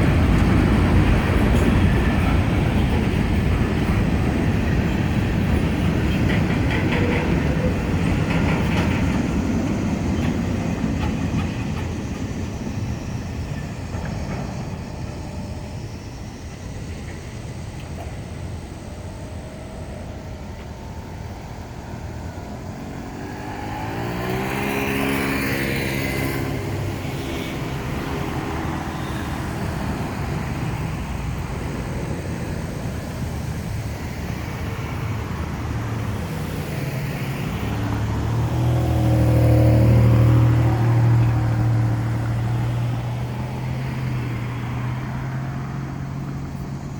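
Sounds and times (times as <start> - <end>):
deep engine passing: 19.7 - 46.9
vehicles accelerating past: 20.9 - 46.9.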